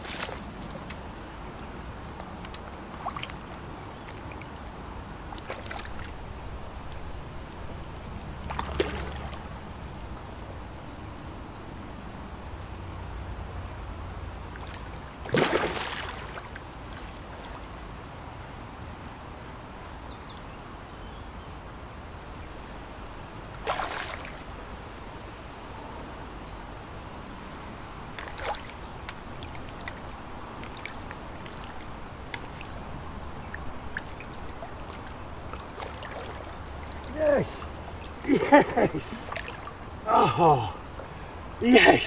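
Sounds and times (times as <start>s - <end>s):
fish splashing in water: 5.3s - 9.8s, 14.5s - 17.6s, 23.6s - 24.6s, 28.1s - 40.0s.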